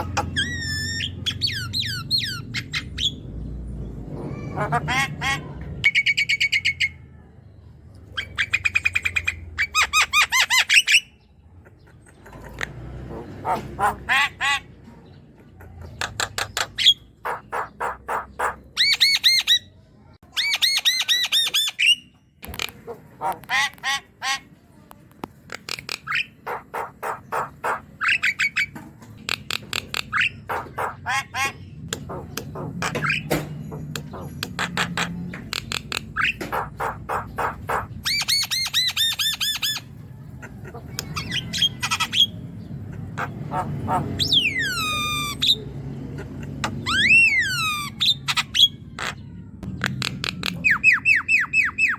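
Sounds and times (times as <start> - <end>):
bird harsh rasping chatter: 4.2 - 7.0, 8.1 - 19.7, 20.4 - 24.6, 25.4 - 51.9.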